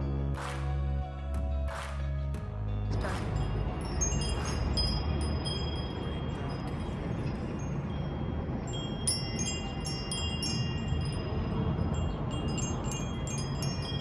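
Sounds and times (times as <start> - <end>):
steady low rumble: 0.0 - 14.0
wind chimes ringing: 2.9 - 14.0.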